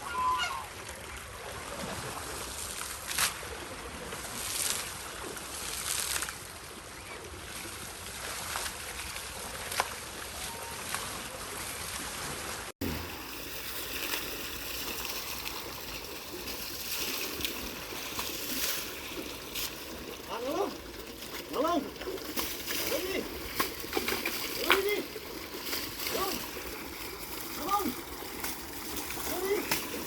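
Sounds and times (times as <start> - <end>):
water running and splashing: 8.2 - 30.0.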